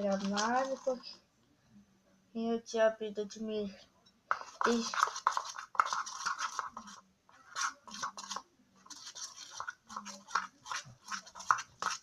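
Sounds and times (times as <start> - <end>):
slime squishing and scraping: 0.0 - 1.2, 4.3 - 12.0.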